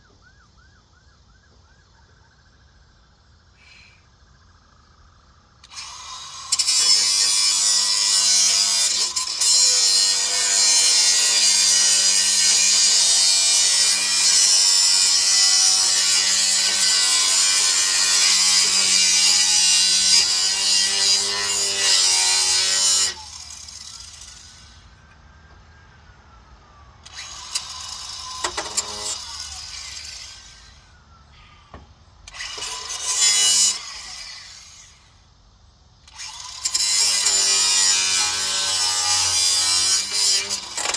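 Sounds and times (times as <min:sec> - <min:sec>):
power tool cutting: 0:05.6 - 0:24.9, 0:27.0 - 0:30.8, 0:32.3 - 0:35.1, 0:36.1 - 0:40.9.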